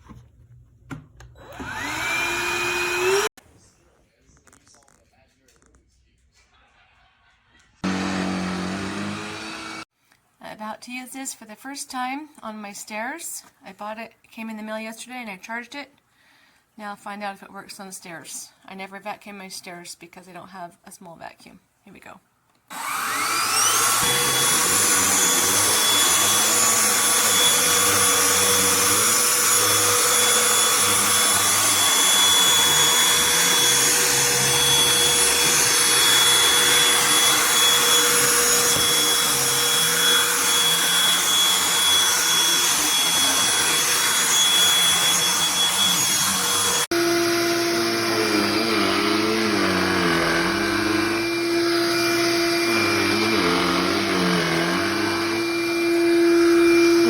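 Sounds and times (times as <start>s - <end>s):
handheld vacuum whining: 1.3s - 3.4s, 7.8s - 9.9s, 22.7s - 57.0s.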